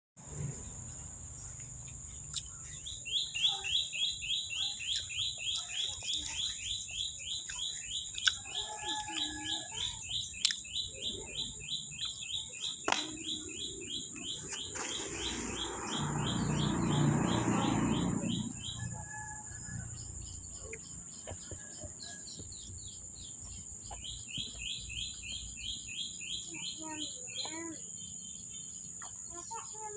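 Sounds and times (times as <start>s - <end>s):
bird chirping: 0.3s - 29.9s.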